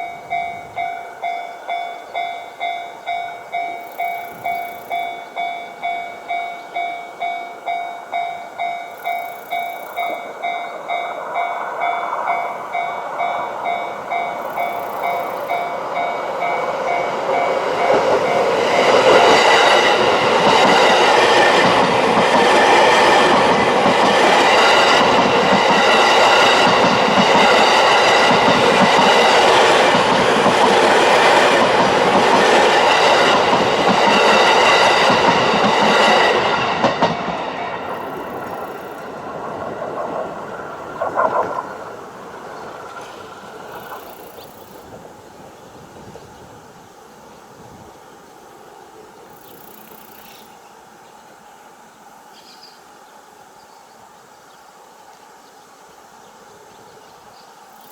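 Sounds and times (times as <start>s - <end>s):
level crossing alarm dinging: 0.0s - 20.9s
train wheels clattering over joints: 2.9s - 45.6s.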